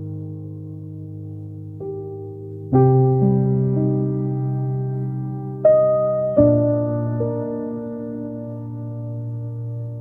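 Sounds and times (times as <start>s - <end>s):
calm electric piano music: 0.0s - 10.0s.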